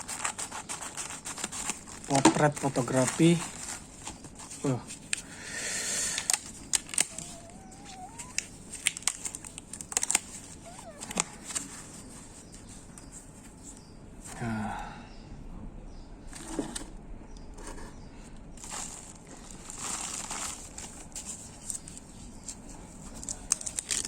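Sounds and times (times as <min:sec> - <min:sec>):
packaging rustling: 0:00.0 - 0:05.4, 0:06.1 - 0:13.6, 0:18.6 - 0:24.0.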